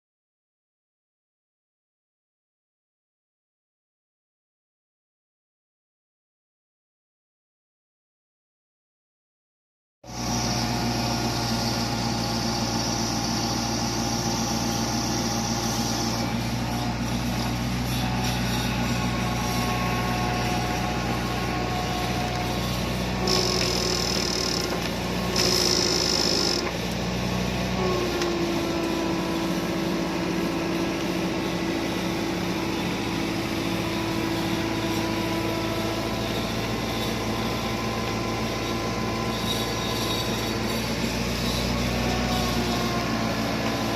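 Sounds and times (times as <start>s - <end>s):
heavy engine humming: 10.1s - 43.9s.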